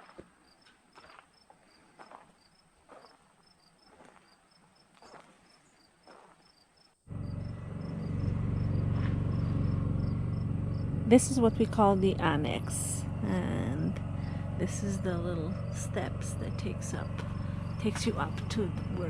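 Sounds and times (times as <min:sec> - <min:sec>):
soft footsteps: 0:00.0 - 0:06.4
crickets chirping: 0:00.0 - 0:11.6, 0:12.4 - 0:19.0
loud low hum: 0:07.1 - 0:19.0.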